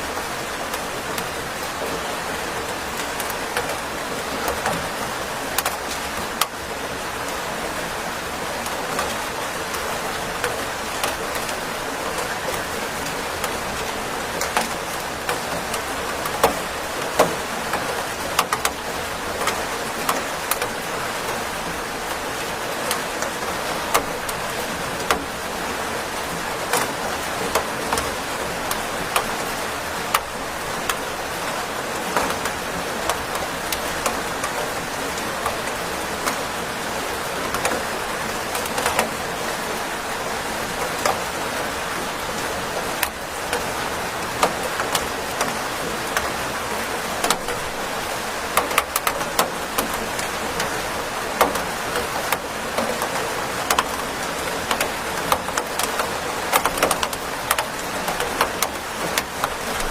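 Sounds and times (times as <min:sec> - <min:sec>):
steady rain hiss: 0:00.0 - 0:59.9
raindrops tapping close by: 0:00.1 - 0:59.9.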